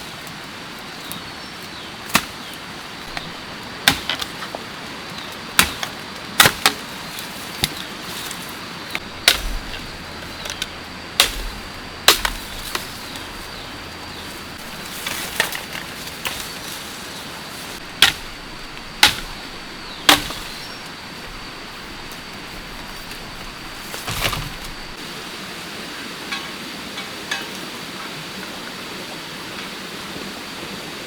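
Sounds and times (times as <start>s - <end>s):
blade chopping bamboo: 2.1s - 2.5s, 3.1s - 4.6s, 5.6s - 7.0s, 7.6s - 16.7s, 17.7s - 25.0s.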